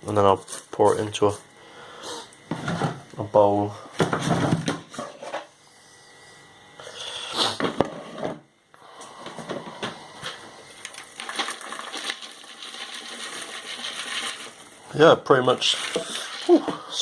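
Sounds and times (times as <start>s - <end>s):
popcorn rustling and clicking: 10.8s - 14.7s.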